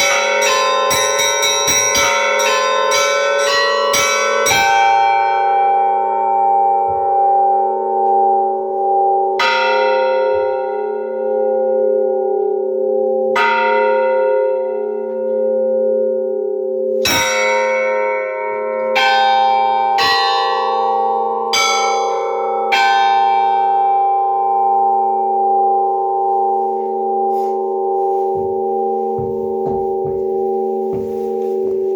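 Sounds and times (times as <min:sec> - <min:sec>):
bells ringing: 0:00.0 - 0:31.9.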